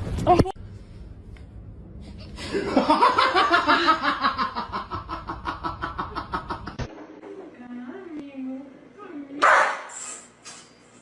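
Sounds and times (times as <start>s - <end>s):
person laughing: 2.4s - 6.8s.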